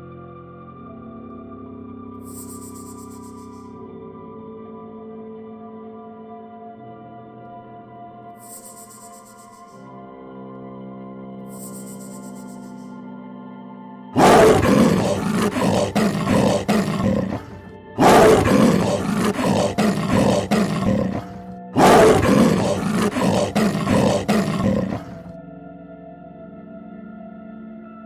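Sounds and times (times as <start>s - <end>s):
large animal roaring: 14.2s - 25.3s.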